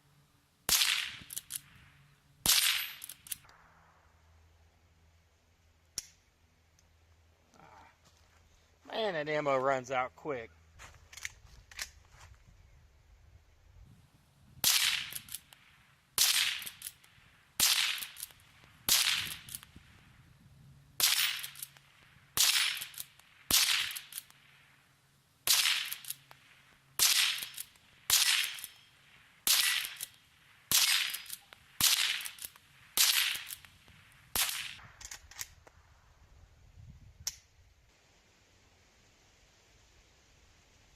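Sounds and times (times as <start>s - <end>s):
rifle shots cracking: 0.7s - 1.7s, 2.4s - 3.5s, 14.6s - 19.7s, 21.0s - 24.6s, 25.4s - 35.4s.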